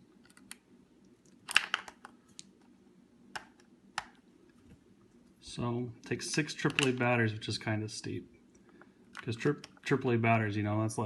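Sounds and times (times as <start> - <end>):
plastic clicks and clatters: 1.3 - 2.5, 6.6 - 7.0.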